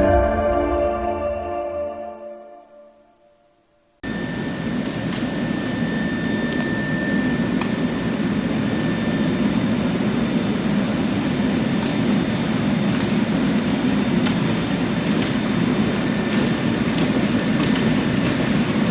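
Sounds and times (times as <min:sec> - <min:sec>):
thin high whine: 0:04.0 - 0:12.7
floor grinder grinding concrete: 0:04.0 - 0:18.9.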